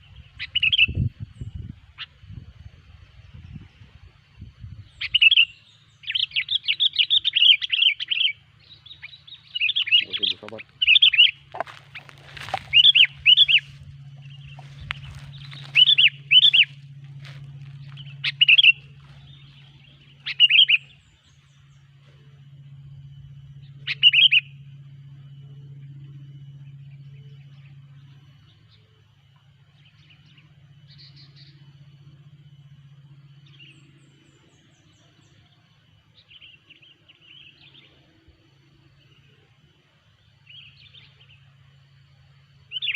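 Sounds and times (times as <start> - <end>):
low steady hum: 0.0 - 42.9
bulbul calling: 4.8 - 21.9, 23.6 - 24.8, 42.7 - 42.9.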